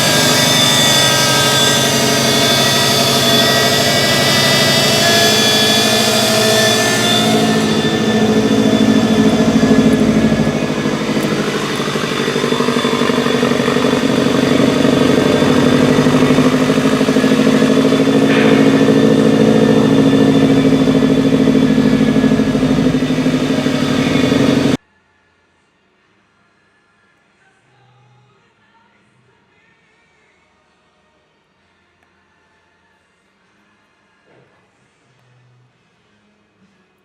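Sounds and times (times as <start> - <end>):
car engine rough idling: 0.0 - 24.8.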